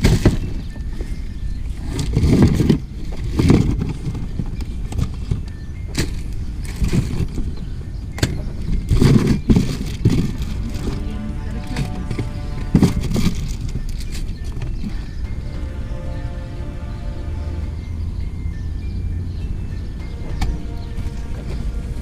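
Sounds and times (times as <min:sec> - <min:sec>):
steady low rumble: 0:10.2 - 0:13.8, 0:15.2 - 0:18.6.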